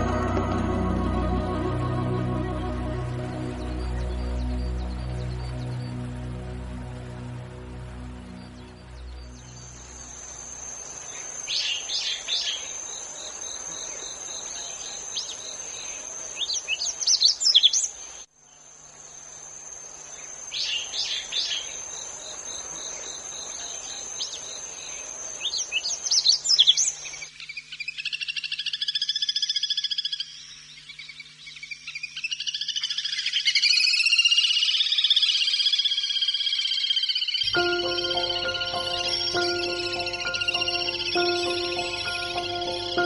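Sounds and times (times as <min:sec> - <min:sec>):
high-pitched insect chorus: 0:00.0 - 0:43.0
rapidly pulsed bird call: 0:24.3 - 0:43.0
wild bird calls: 0:24.3 - 0:43.0.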